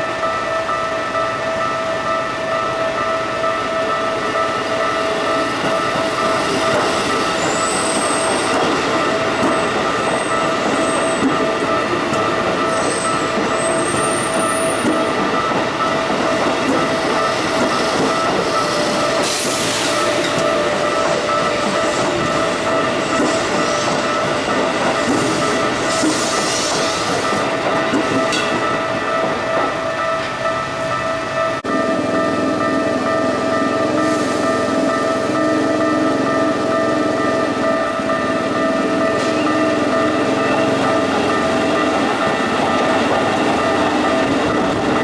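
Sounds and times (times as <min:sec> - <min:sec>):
crossing warning alarm: 0:00.0 - 0:45.0
train rumbling: 0:00.0 - 0:45.0
high thin wheel squeals: 0:07.3 - 0:08.6.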